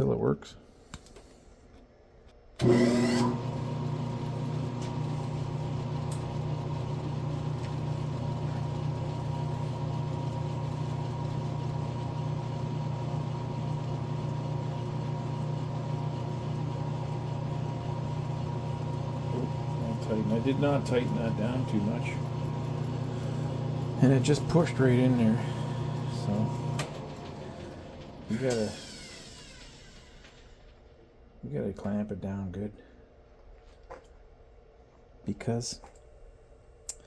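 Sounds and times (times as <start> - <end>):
lathe motor humming: 2.6 - 30.6.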